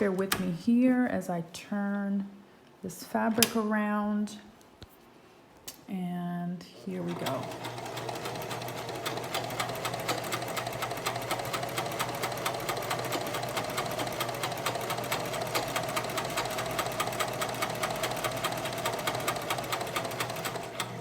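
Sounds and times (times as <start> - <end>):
sewing machine running: 6.8 - 21.0.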